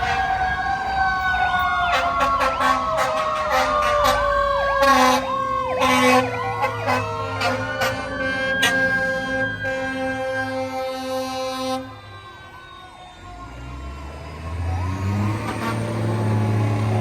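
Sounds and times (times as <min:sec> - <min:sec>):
siren wailing: 0:00.0 - 0:17.0
siren yelp: 0:00.0 - 0:17.0
short horn blasts: 0:04.8 - 0:11.9, 0:15.4 - 0:16.3.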